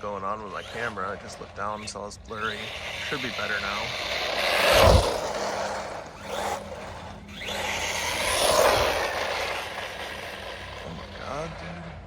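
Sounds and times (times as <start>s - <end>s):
rc car motor whine: 0.0s - 12.0s
tyre noise: 0.4s - 11.5s.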